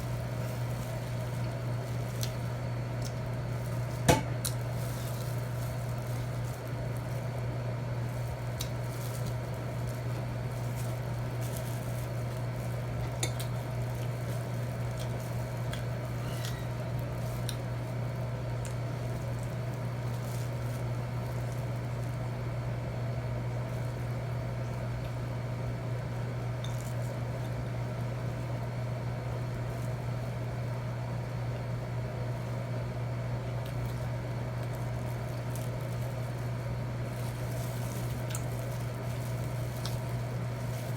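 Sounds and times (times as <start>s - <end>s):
steady low hum: 0.0s - 40.9s
utensils clinking on dishes: 16.2s - 16.8s.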